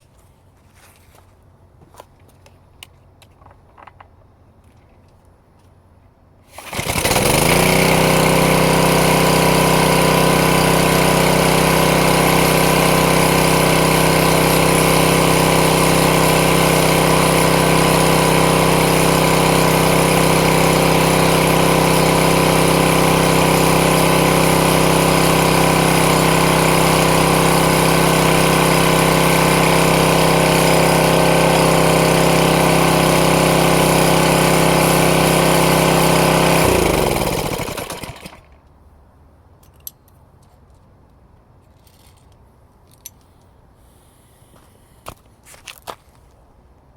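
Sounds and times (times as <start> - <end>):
lawn mower engine starting and running: 6.4 - 38.8.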